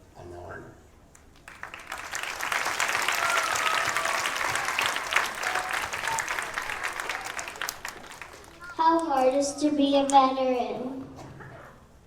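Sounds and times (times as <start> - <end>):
audience applauding: 1.3 - 8.8.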